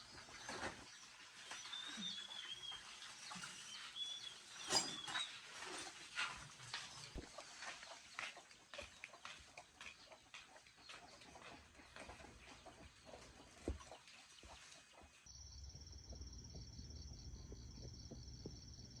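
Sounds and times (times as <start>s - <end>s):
steady low hum: 15.3s - 19.0s.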